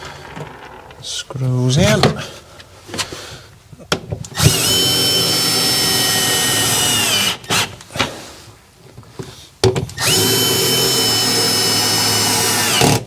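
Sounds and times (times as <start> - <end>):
power drill driving screws: 4.3 - 7.8, 10.0 - 13.0.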